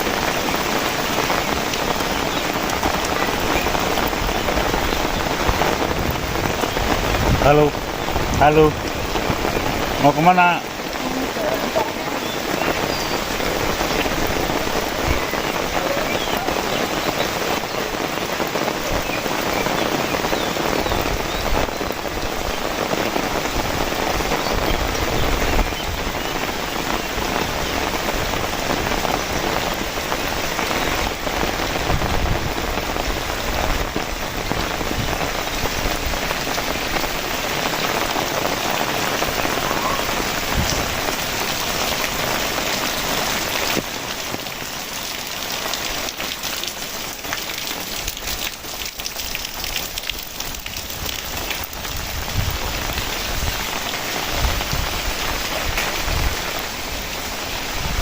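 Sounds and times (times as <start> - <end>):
heavy rain falling: 0.0 - 58.0
single raindrops ticking: 43.6 - 51.9.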